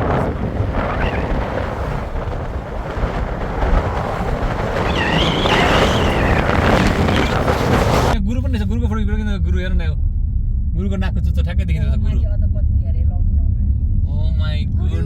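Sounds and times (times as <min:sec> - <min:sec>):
wind buffeting microphone: 0:00.0 - 0:08.2
road rumble: 0:00.0 - 0:15.0.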